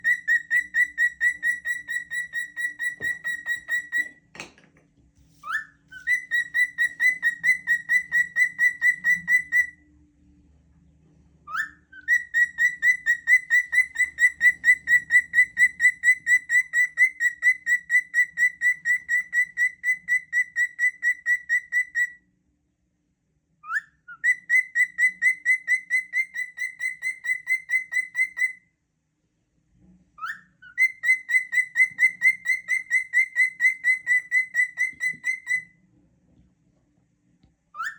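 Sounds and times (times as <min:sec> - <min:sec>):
cockatiel whistling: 0:00.0 - 0:04.2, 0:05.4 - 0:09.8, 0:11.5 - 0:22.2, 0:23.6 - 0:28.6, 0:30.2 - 0:35.8.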